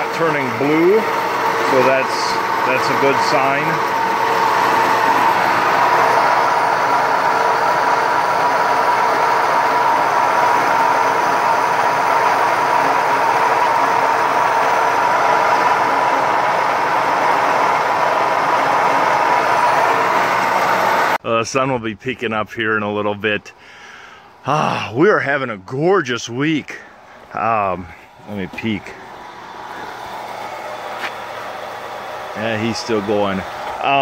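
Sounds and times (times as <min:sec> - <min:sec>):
milling machine cutting metal: 0:00.0 - 0:21.2, 0:28.9 - 0:34.0.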